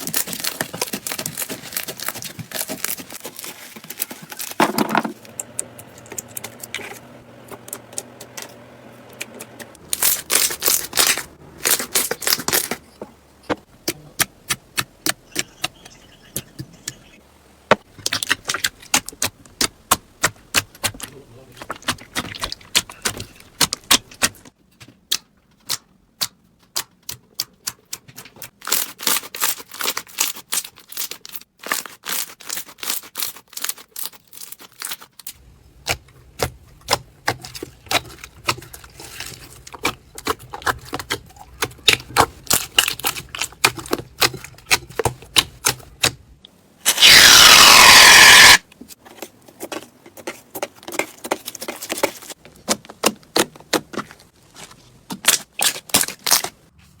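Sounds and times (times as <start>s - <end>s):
slime crackling and popping: 46.9s - 48.6s.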